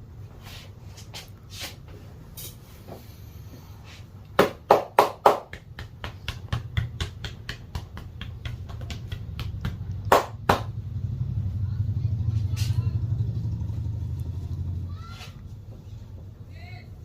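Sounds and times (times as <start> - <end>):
low steady hum: 0.0 - 17.0
quick light hand taps: 5.4 - 10.3.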